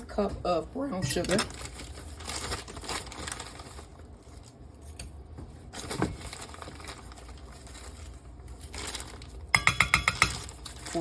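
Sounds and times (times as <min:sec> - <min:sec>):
packaging bag crinkling: 0:01.3 - 0:04.6, 0:05.8 - 0:09.5.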